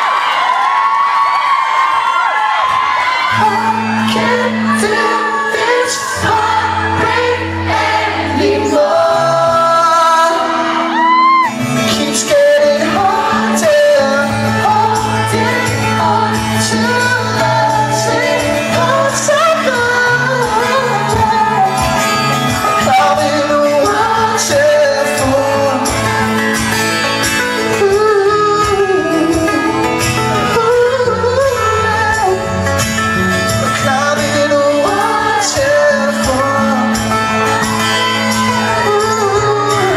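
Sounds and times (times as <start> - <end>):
crowd shouting: 0.0 - 9.6, 10.3 - 11.6, 37.2 - 39.9
live pop-rock band with singing: 0.0 - 39.9
crowd singing along: 2.7 - 39.9.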